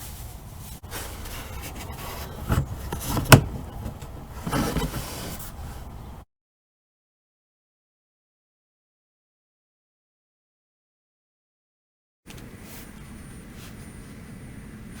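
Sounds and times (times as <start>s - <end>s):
rubbing and scraping handling noise: 0.0s - 6.2s.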